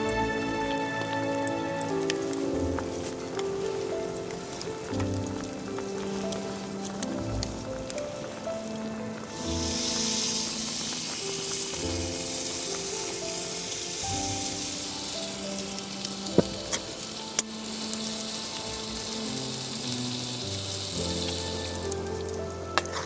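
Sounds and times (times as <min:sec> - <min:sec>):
food sizzling over campfire: 0:00.0 - 0:23.0
quiet instrumental music: 0:00.0 - 0:23.0.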